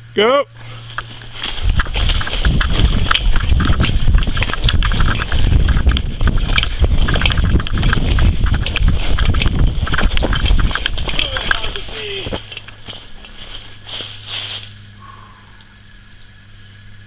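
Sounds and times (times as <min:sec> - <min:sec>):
hurried footsteps on rocky ground: 0:00.6 - 0:14.8
wind rumble on microphone: 0:00.9 - 0:14.5.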